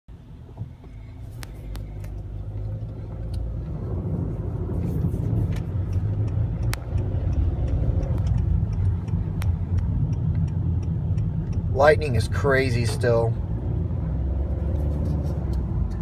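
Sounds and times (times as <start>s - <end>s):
car cabin rumble: 0.1s - 16.0s
sharp clicks: 5.5s - 11.7s.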